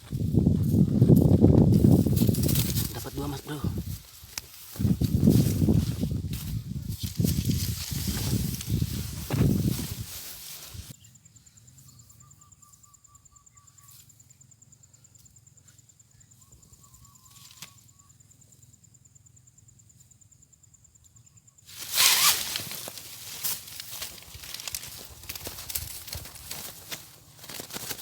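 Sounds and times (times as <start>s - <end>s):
insect trilling: 20.6s - 28.0s
loud rustling: 21.8s - 28.0s.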